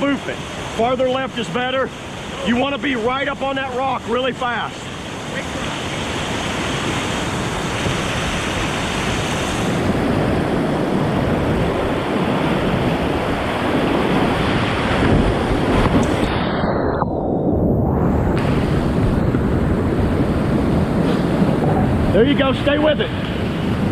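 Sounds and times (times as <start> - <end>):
whitewater rushing through rapid: 0.0 - 16.8, 18.4 - 23.9.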